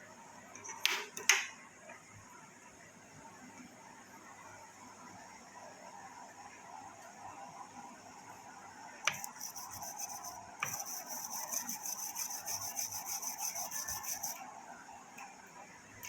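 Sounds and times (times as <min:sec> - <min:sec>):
brush scrubbing strokes: 0:09.2 - 0:14.4.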